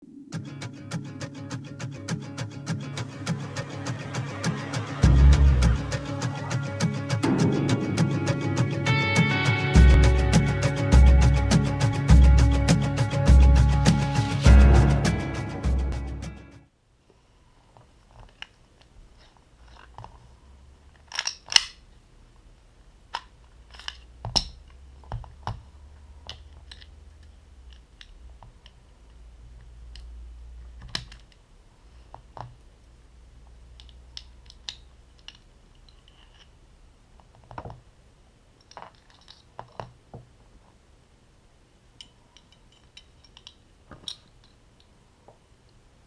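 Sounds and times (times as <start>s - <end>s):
low steady hum: 0.0s - 16.6s
plastic gun parts clicking: 21.0s - 21.8s, 23.1s - 24.6s, 38.6s - 39.9s, 42.0s - 44.9s.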